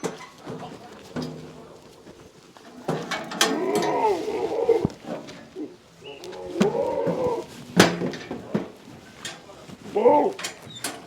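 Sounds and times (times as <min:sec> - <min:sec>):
goats bleating: 0:00.8 - 0:08.1, 0:09.8 - 0:10.6.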